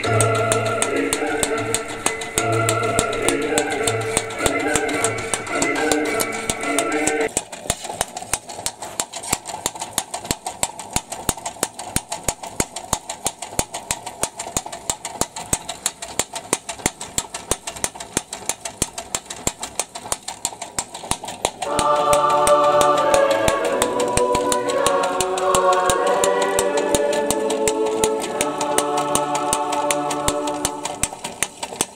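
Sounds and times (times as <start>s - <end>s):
reciprocating tool slapping: 21.1s - 31.9s.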